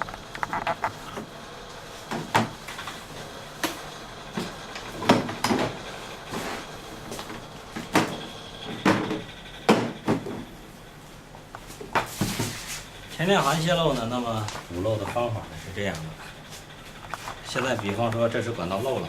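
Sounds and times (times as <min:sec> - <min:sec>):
hard objects knocking and clunking: 0:00.0 - 0:01.3, 0:07.2 - 0:10.5.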